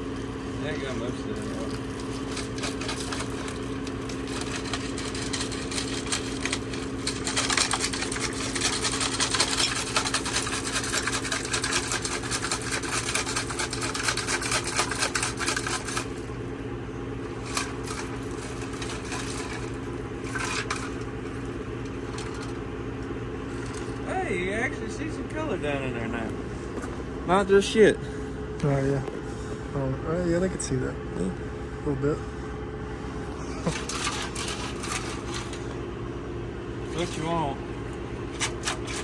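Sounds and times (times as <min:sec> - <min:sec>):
steady low hum: 0:00.0 - 0:39.0
rocks rattling inside metal tank: 0:00.6 - 0:16.6, 0:17.2 - 0:24.6, 0:33.6 - 0:35.9, 0:36.7 - 0:39.0.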